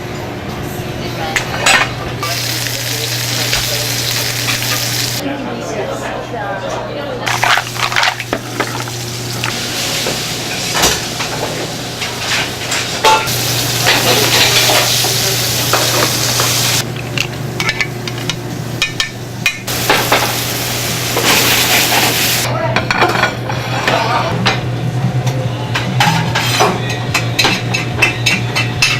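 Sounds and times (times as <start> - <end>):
food sizzling in a pan: 2.2 - 5.2, 7.3 - 16.8, 19.6 - 22.5
utensils scraping and clinking: 7.3 - 10.9.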